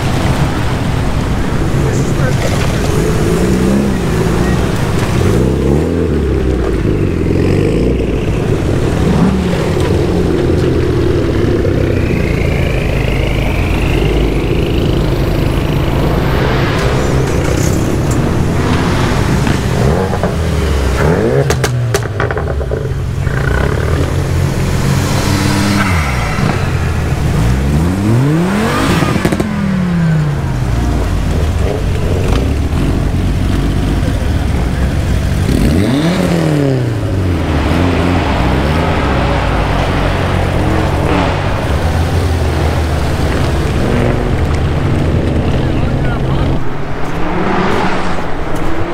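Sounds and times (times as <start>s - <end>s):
car engines revving: 0.0s - 48.9s.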